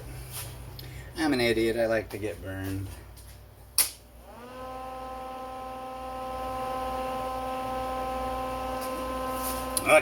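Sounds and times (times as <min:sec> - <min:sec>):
electric motor humming: 0:04.2 - 0:10.0.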